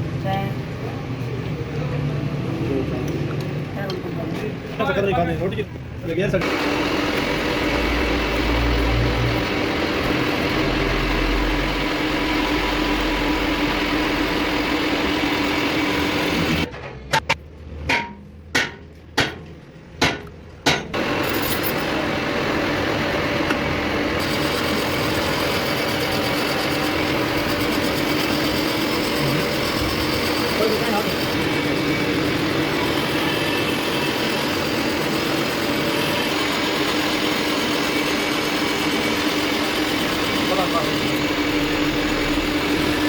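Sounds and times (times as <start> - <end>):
machine humming: 6.4 - 16.7, 20.9 - 43.0
hammer strikes on metal: 16.7 - 21.0.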